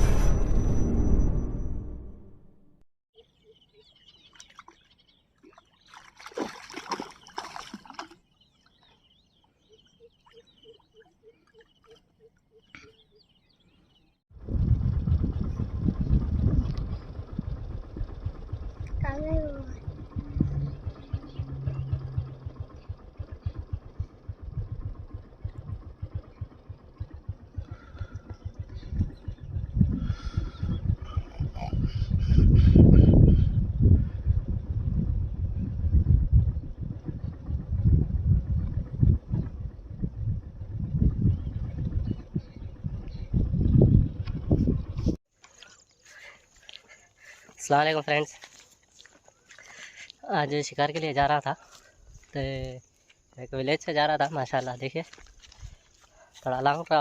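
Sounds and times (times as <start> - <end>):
small birds chirping: 3.2 - 14.2, 15.9 - 33.6
water trickling and splashing: 4.0 - 12.5
motorcycle engine running: 14.4 - 31.6, 33.7 - 45.2
steady low hum: 14.4 - 45.2.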